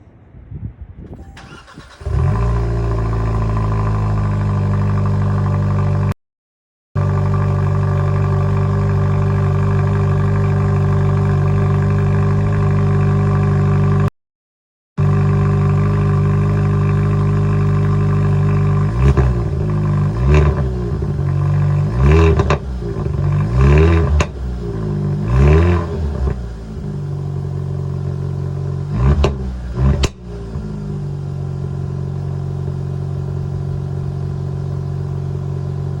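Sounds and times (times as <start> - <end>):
car engine idling and revving: 1.4 - 6.2, 7.0 - 14.1, 15.0 - 36.0
exhaust crackles and pops: 7.0 - 14.0, 15.0 - 31.2.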